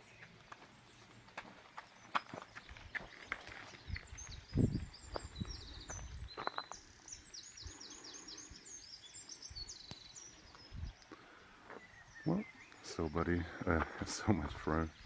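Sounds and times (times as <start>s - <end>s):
footsteps on a path: 0.0s - 8.5s, 9.3s - 15.0s
songbirds chirping: 0.0s - 15.0s.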